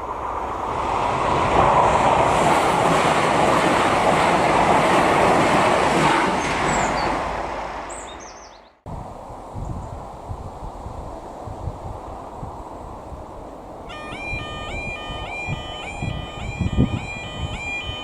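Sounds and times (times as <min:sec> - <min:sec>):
train wheels on rails: 0:00.1 - 0:08.0
wind on microphone: 0:08.9 - 0:18.0.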